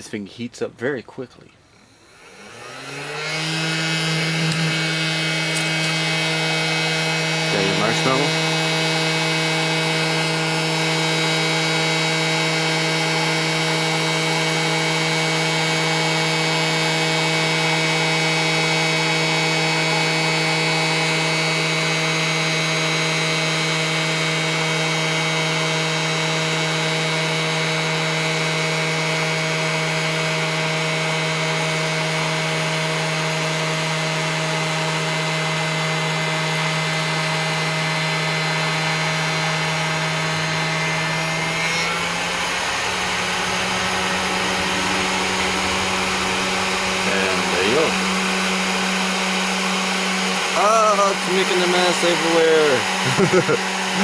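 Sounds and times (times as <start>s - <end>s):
electric fan motor hum: 1.6s - 54.0s
rush of blown air: 42.0s - 49.5s.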